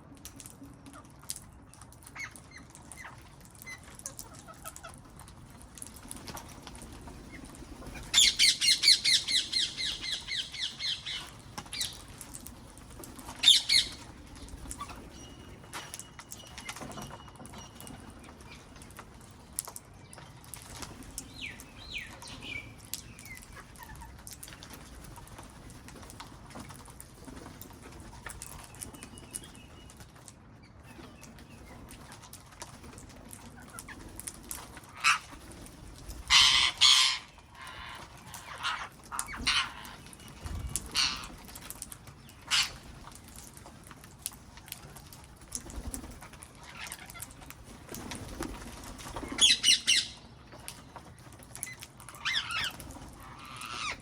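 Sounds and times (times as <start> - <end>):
parrots calling: 7.9 - 12.1, 13.3 - 15.3, 34.8 - 35.4, 36.2 - 41.6, 42.4 - 42.9, 49.2 - 50.3, 52.1 - 54.0
parrot harsh squawks: 34.9 - 35.3, 36.3 - 40.0, 40.9 - 41.3, 52.2 - 54.0.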